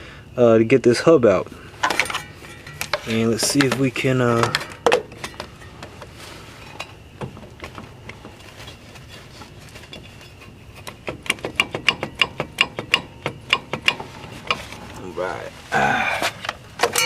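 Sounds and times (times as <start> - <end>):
ratchet wrench clicking: 11.1 - 14.6.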